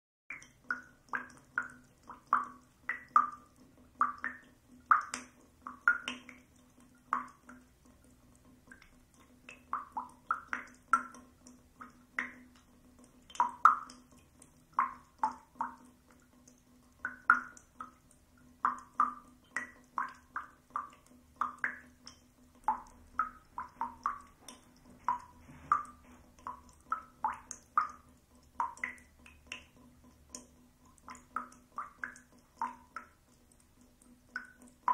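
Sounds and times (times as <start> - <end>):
water drops plinking: 0.3 - 6.5, 13.3 - 15.9
faint steady hum: 0.3 - 34.9.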